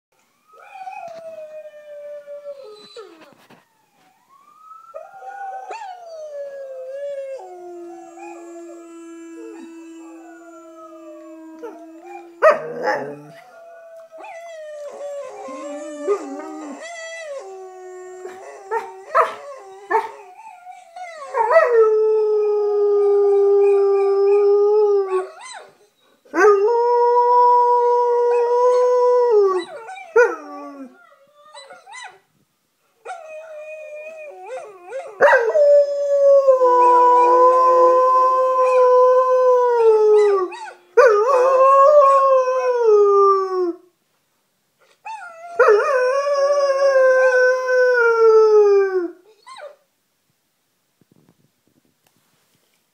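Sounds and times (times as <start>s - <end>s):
recorded dogs howling: 4.5s - 32.2s, 33.0s - 43.8s, 45.1s - 49.8s
dog howling: 5.2s - 20.4s.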